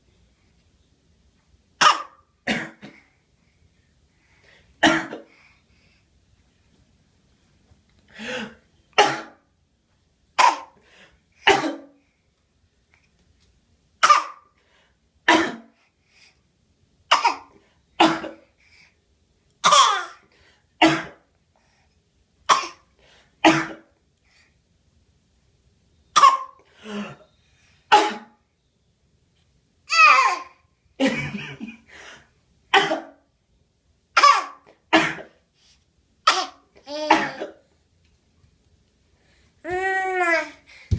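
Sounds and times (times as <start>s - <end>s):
baby fake coughing: 1.8s - 3.1s, 4.8s - 5.3s, 9.0s - 9.4s, 10.4s - 10.8s, 11.4s - 11.9s, 14.0s - 14.5s, 15.3s - 15.7s, 17.1s - 18.4s, 19.6s - 20.2s, 20.8s - 21.2s, 22.5s - 23.9s, 26.2s - 27.2s, 27.9s - 28.4s, 29.9s - 31.2s, 32.7s - 33.2s, 34.2s - 35.4s, 36.3s - 37.6s.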